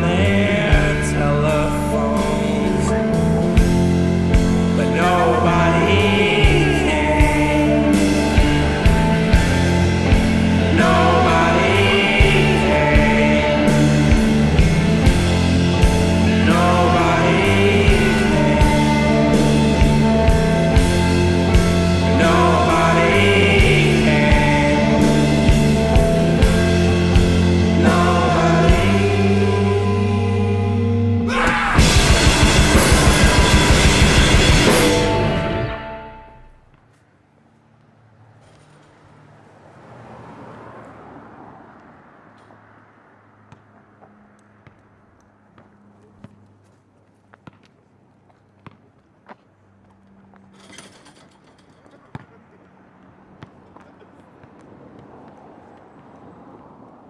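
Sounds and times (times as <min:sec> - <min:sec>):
live psychedelic rock band: 0:00.0 - 0:36.2
car passing by: 0:38.0 - 0:45.9, 0:54.0 - 0:57.0.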